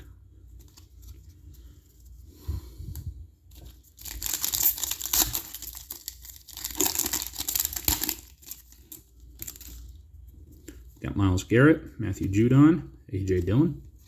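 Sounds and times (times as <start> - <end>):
wrapper tearing and crinkling: 3.8 - 9.8.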